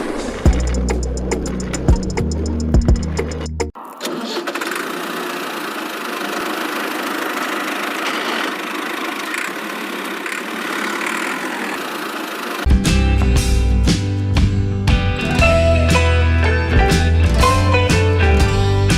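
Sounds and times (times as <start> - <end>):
small motor running: 4.0 - 12.7.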